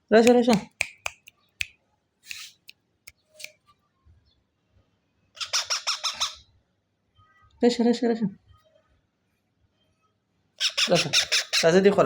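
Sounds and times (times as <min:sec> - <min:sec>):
baby parrot squawking: 0:05.4 - 0:06.5, 0:10.6 - 0:11.8.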